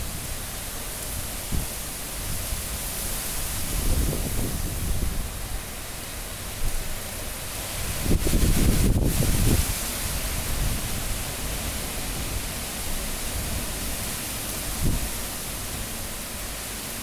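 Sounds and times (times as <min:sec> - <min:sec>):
strong wind blowing: 0:01.2 - 0:05.6, 0:07.8 - 0:16.6.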